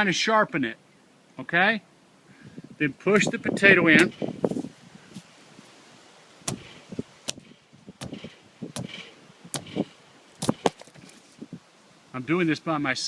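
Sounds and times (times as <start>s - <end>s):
sharp knocks on plastic pipe: 6.5s - 6.7s, 7.3s - 9.8s.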